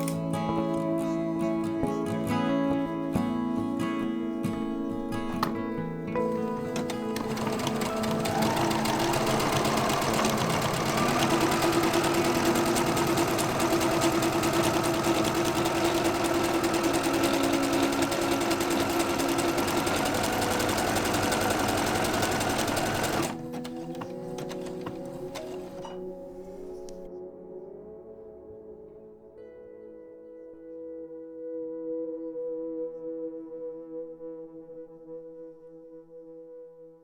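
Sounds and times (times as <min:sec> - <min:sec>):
sewing machine stitching: 0:04.7 - 0:27.1.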